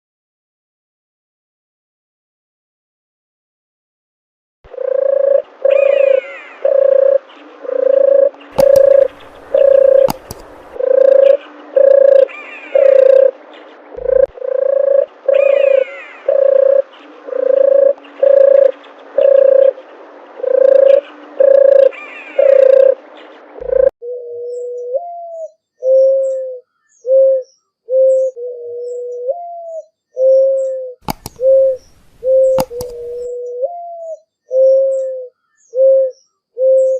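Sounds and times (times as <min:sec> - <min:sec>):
dove cooing: 0:04.7 - 0:13.4, 0:14.0 - 0:36.9
small birds chirping faintly: 0:04.7 - 0:36.9.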